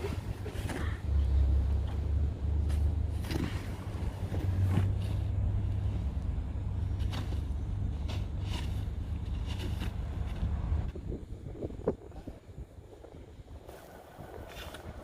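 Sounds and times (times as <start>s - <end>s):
wind buffeting microphone: 10.1s - 15.0s.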